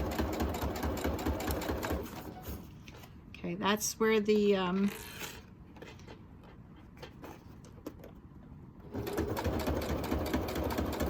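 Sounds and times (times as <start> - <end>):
sewing machine stitching: 0.0 - 2.5, 8.8 - 11.0.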